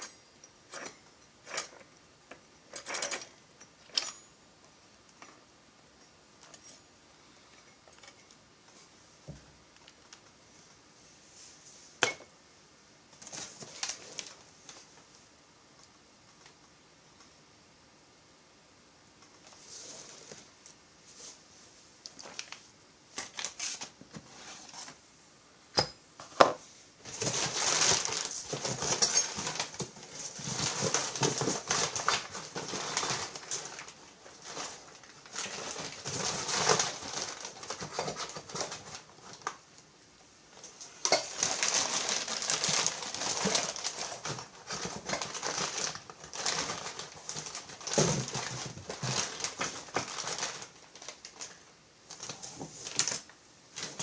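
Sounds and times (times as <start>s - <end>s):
packaging crinkling: 27.1s - 39.6s, 41.1s - 54.0s.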